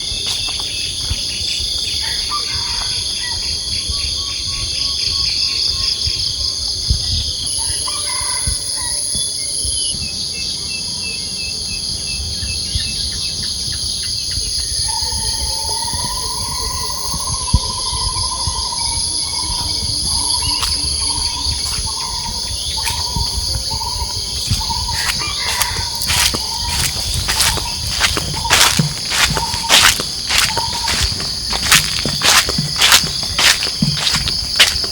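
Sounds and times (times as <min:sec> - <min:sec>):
insects calling: 0:07.5 - 0:34.9
birds calling: 0:19.3 - 0:34.9.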